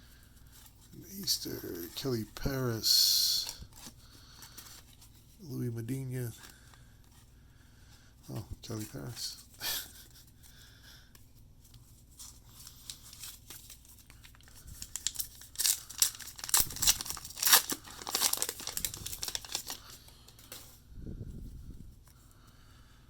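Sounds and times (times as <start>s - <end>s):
wrapper tearing and crinkling: 12.5s - 20.0s.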